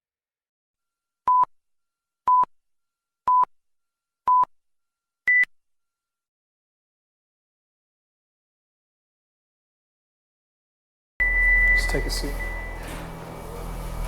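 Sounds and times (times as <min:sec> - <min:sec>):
electronic countdown beeps: 0:03.3 - 0:03.5, 0:11.2 - 0:13.0
higher beep: 0:11.2 - 0:13.1.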